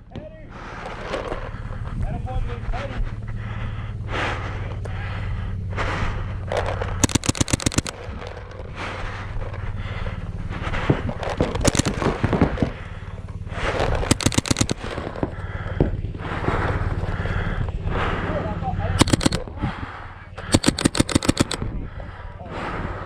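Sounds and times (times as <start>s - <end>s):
hard wheezing breathing: 2.9s - 23.0s
paintball marker firing: 6.7s - 8.8s, 11.2s - 13.0s, 13.7s - 15.5s, 19.0s - 19.6s, 20.4s - 21.7s.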